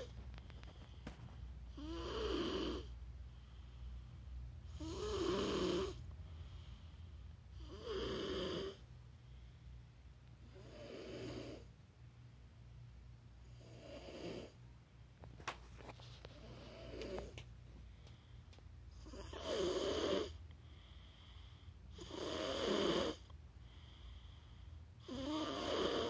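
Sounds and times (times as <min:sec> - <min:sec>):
low steady hum: 0:00.0 - 0:26.0
person snoring: 0:01.7 - 0:02.9, 0:04.7 - 0:06.0, 0:07.6 - 0:08.8, 0:10.5 - 0:11.7, 0:13.6 - 0:14.6, 0:16.4 - 0:17.4, 0:18.9 - 0:20.4, 0:21.9 - 0:23.3, 0:25.0 - 0:26.0.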